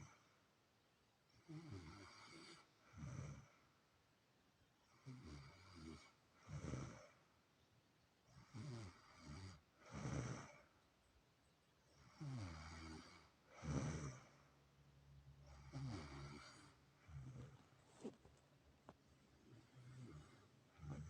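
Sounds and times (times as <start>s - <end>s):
people snoring heavily: 5.0s - 7.2s, 8.4s - 10.7s, 12.0s - 14.4s, 15.5s - 18.2s, 19.4s - 21.0s.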